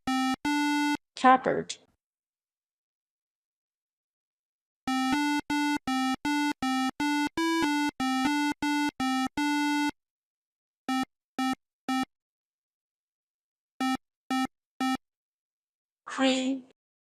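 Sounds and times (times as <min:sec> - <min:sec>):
electronic square-wave beeps: 0:00.0 - 0:01.0, 0:04.9 - 0:10.0, 0:10.9 - 0:12.1, 0:13.8 - 0:15.0.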